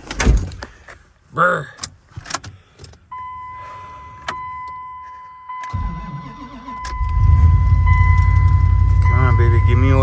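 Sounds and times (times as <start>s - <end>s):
high ignition chime: 3.2s - 10.0s
ignition click: 4.2s - 9.6s
engine starter cranking: 5.7s - 8.6s
pickup engine running: 5.8s - 10.0s.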